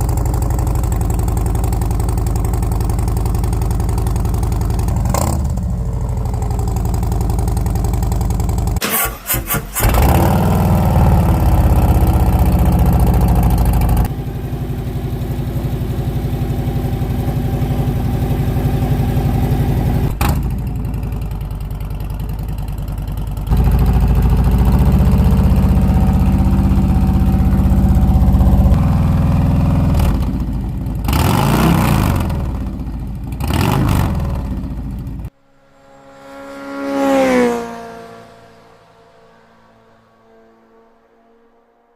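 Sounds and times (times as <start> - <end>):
motorcycle engine running: 0.0 - 8.8, 9.8 - 38.4
swelling tone: 35.3 - 41.9.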